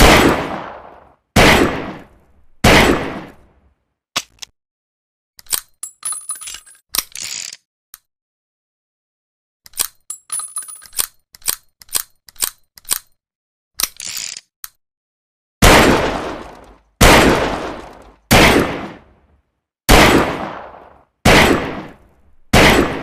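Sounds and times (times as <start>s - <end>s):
gunshot: 0.0s - 3.4s, 15.6s - 19.1s, 19.9s - 23.0s.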